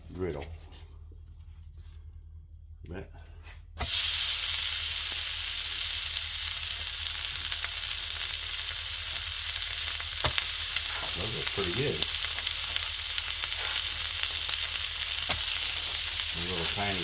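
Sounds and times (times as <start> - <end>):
food sizzling on griddle: 3.8 - 17.0.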